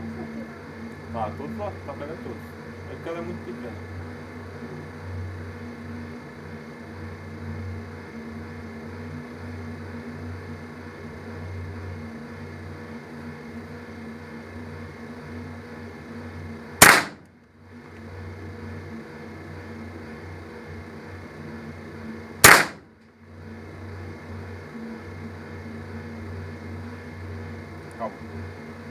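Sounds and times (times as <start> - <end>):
steady low hum: 0.0 - 28.9
shotgun shot: 16.8 - 17.2, 22.4 - 22.8.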